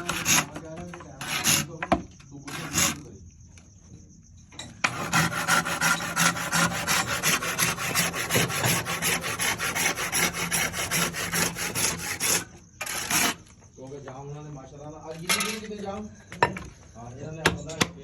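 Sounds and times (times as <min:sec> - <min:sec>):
hand sawing wood: 0:00.0 - 0:01.8, 0:02.4 - 0:03.1, 0:04.8 - 0:13.5.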